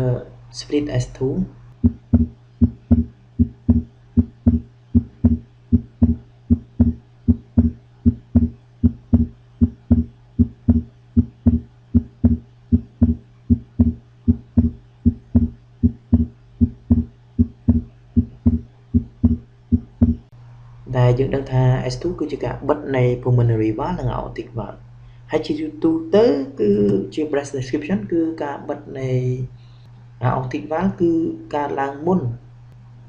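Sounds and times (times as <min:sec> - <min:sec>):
person lecturing: 0:00.0 - 0:01.5, 0:20.9 - 0:29.6, 0:30.2 - 0:32.4
low steady hum: 0:00.0 - 0:33.0
heartbeat: 0:01.8 - 0:20.3.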